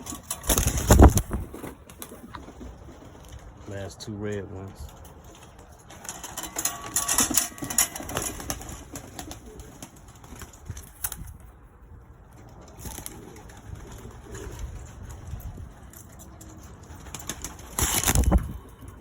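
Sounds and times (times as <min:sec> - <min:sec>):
wings fluttering and clatter: 0:00.0 - 0:19.0
pigeons cooing: 0:05.2 - 0:10.9, 0:12.2 - 0:19.0.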